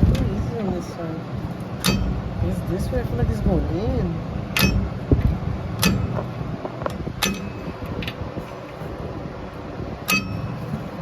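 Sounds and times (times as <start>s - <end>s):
low background hum: 0.0s - 11.0s
brake rotor metallic clinks: 1.4s - 2.3s, 4.5s - 8.8s, 10.0s - 11.0s.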